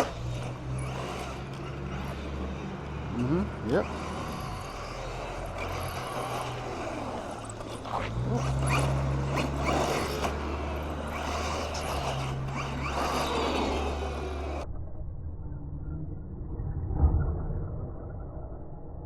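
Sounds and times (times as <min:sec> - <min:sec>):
electric motor whining: 0:00.0 - 0:14.6.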